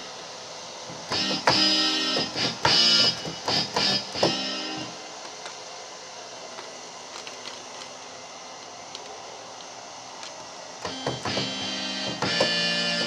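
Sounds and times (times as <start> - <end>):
steady hiss: 0.0 - 13.0
synthesizer keyboard notes: 10.9 - 13.0.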